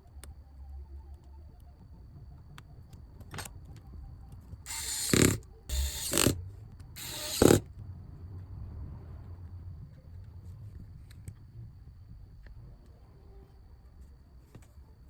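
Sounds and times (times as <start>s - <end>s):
rasping scrapes: 7.0s - 7.6s.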